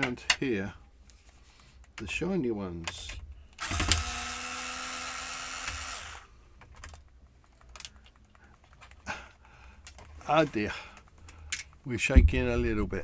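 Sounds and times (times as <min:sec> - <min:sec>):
power screwdriver running: 0:03.6 - 0:06.3
faint clicks of small parts: 0:06.6 - 0:11.9.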